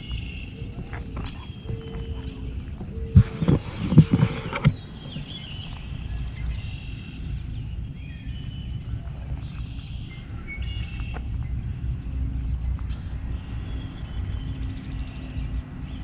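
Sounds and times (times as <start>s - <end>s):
birds chirping faintly: 0.0s - 16.0s
wind rumble on microphone: 0.0s - 16.0s
heavy thumps: 3.2s - 4.8s.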